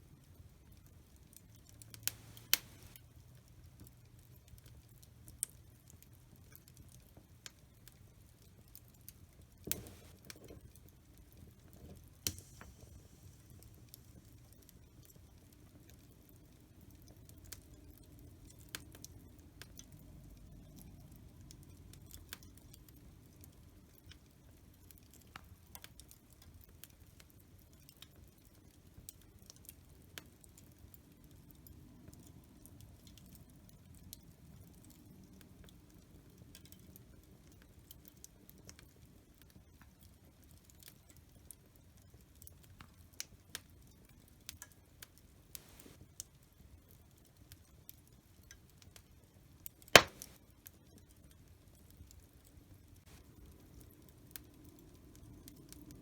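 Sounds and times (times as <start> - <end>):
fireplace fire crackling faintly: 0.0 - 56.0
low rumble of fire: 0.0 - 56.0
fire popping and snapping: 0.3 - 20.0, 20.6 - 33.5, 43.5 - 46.3, 49.7 - 50.4, 53.0 - 56.0.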